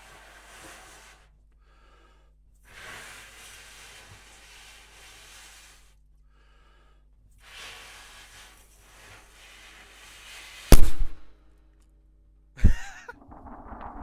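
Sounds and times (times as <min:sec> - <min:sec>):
balloon popping: 0:10.7 - 0:11.3.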